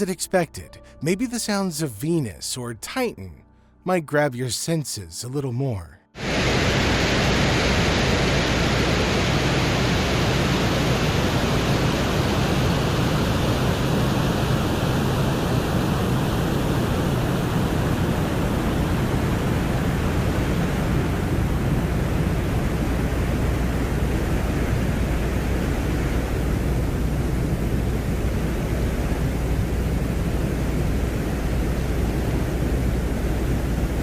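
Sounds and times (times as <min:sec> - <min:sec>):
steady rushing hiss: 0:06.2 - 0:13.3
low hum: 0:17.9 - 0:34.0.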